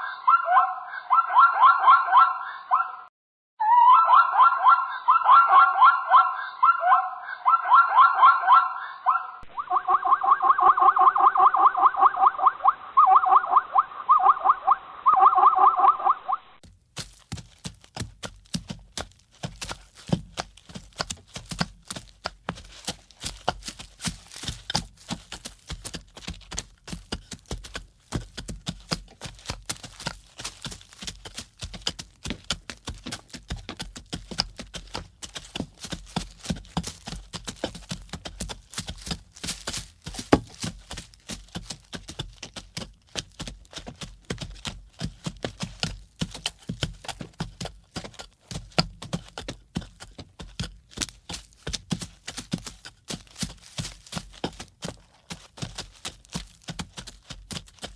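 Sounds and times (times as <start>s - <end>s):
rapid irregular clicks and knocks: 16.6s - 57.9s.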